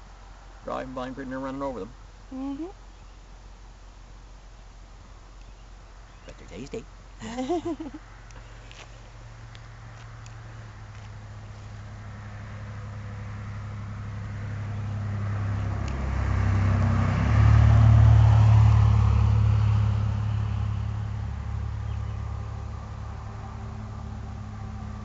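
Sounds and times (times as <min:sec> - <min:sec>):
vehicle passing by: 0:07.6 - 0:25.0.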